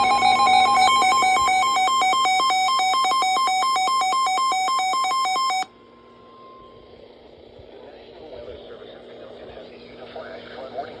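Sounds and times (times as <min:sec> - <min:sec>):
electronic beeping between two pitches: 0:00.0 - 0:05.7.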